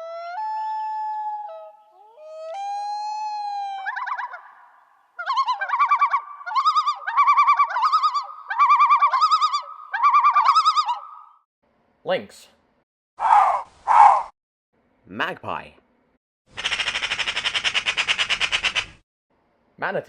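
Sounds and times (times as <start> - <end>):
loon calling: 0.0 - 11.4, 13.2 - 14.3
loon tremolo calls: 0.0 - 11.4, 13.2 - 14.3, 16.6 - 18.9.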